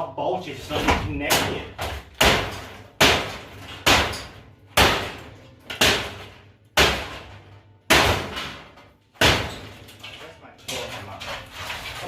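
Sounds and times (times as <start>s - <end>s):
hammer striking metal oven: 0.7s - 9.8s.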